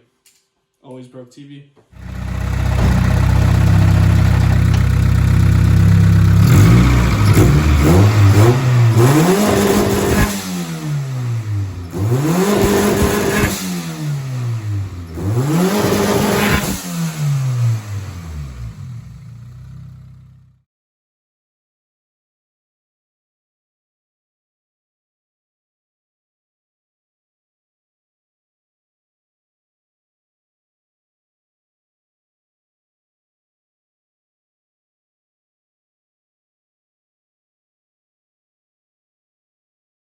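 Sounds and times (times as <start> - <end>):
car engine revving: 2.0 - 20.4.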